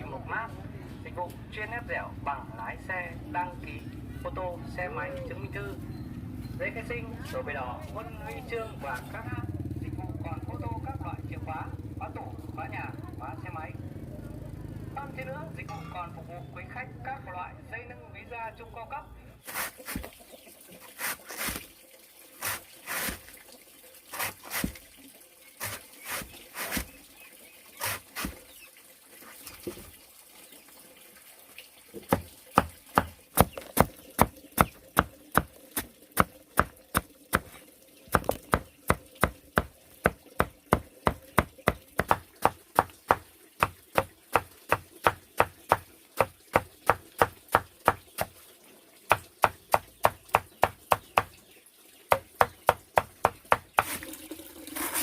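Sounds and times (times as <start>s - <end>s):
knife chopping on wooden board: 19.5s - 20.1s, 21.0s - 21.6s, 22.4s - 23.2s, 24.2s - 24.8s, 25.6s - 26.9s, 27.8s - 28.4s, 32.0s - 37.5s, 38.2s - 48.3s, 49.1s - 51.4s, 52.1s - 54.0s.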